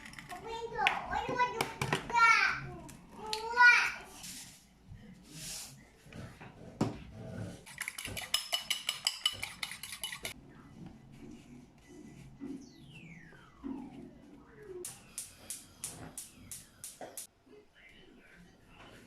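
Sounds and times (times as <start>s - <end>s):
metal utensil clinking on cookware: 7.7s - 10.4s.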